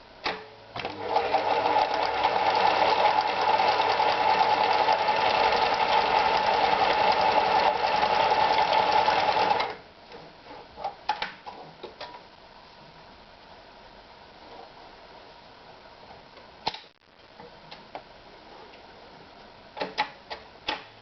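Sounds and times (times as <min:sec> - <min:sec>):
sewing machine running: 0:00.9 - 0:09.7.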